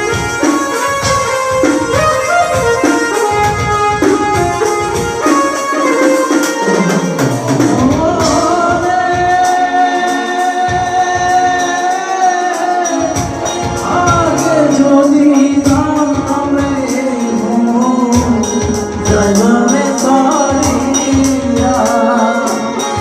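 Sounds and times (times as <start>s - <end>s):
hand drum beat: 0.0s - 9.5s, 12.9s - 23.0s
keyboard: 0.0s - 23.0s
folk song singing: 7.4s - 23.0s.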